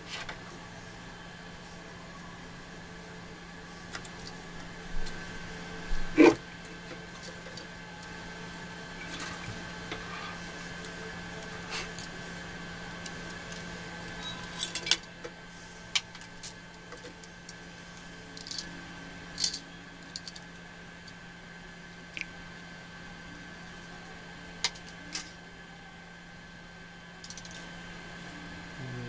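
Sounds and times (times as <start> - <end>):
steady low hum: 0.0 - 29.0
small metal parts clicking: 18.4 - 18.7, 19.4 - 20.4, 27.2 - 27.6.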